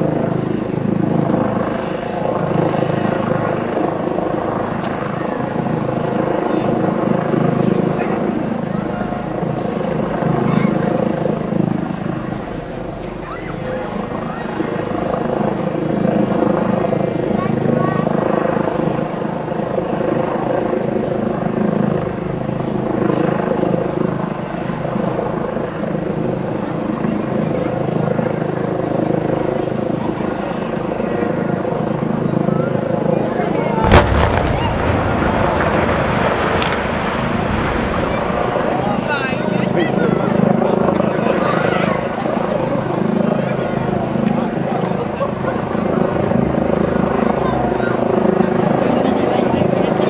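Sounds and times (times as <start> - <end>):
helicopter rotor and engine: 0.0 - 50.0
pulsing engine drone: 6.9 - 19.6.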